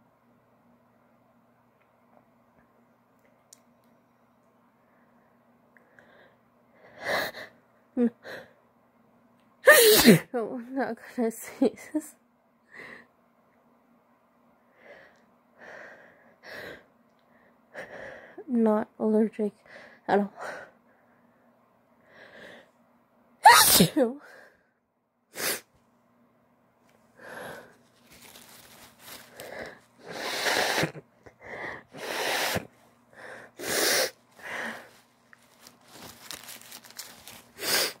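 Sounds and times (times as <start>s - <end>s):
woman sneezing: 9.7s - 10.3s, 23.4s - 24.2s
woman breathing through congested nose: 27.2s - 27.9s, 29.1s - 35.0s.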